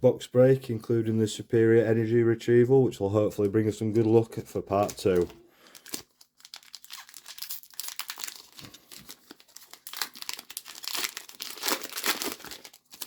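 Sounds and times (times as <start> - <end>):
foil wrapper crinkling and tearing: 3.9 - 13.0.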